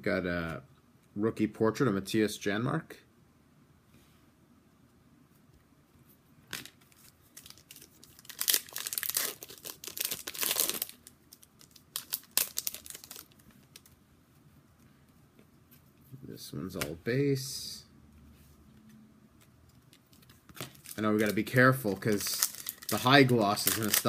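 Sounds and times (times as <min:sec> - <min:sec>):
card pack wrapper tearing and crinkling: 0:06.5 - 0:14.0, 0:19.8 - 0:24.0.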